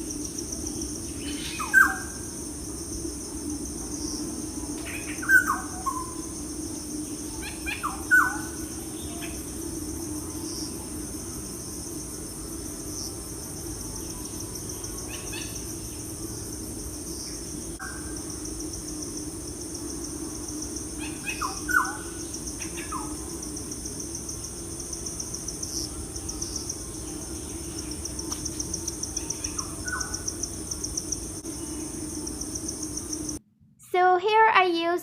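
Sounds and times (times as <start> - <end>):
insects trilling: 0.0 - 33.4
steady low hum: 0.0 - 34.2.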